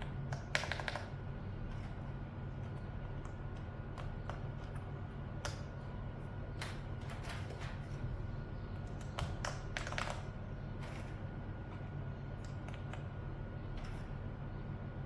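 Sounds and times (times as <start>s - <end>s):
mechanical keyboard typing: 0.0s - 1.2s, 8.8s - 11.1s, 12.4s - 13.1s.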